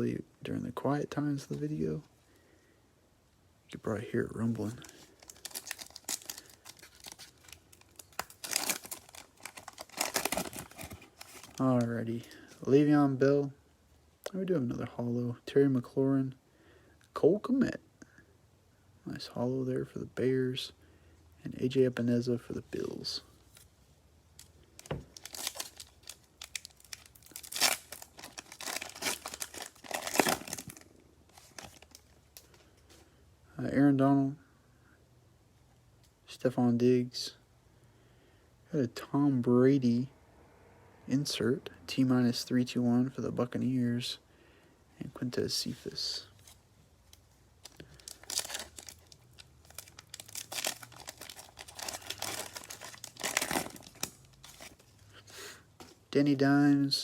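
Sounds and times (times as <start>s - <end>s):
foil wrapper tearing and crinkling: 4.7s - 11.6s, 24.8s - 32.0s, 47.6s - 54.9s.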